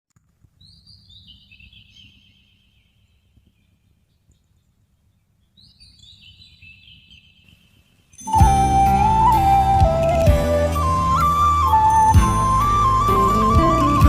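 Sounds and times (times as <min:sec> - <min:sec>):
bird song warbling: 0:00.5 - 0:14.0.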